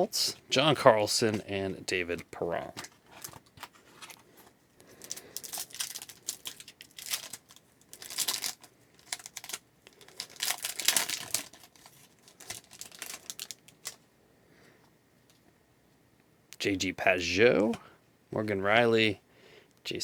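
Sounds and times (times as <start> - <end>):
foil wrapper tearing and crinkling: 4.9 - 14.0.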